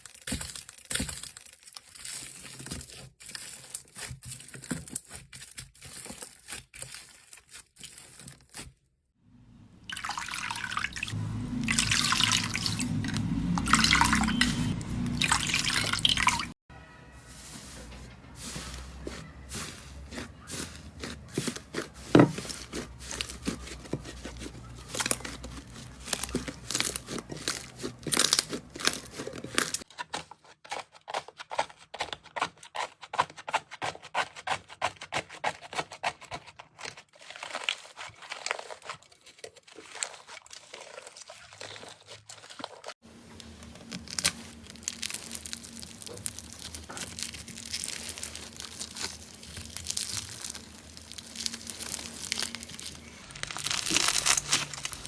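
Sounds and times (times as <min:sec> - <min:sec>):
slime crackling and popping: 0:19.1 - 0:29.9, 0:43.4 - 0:55.0.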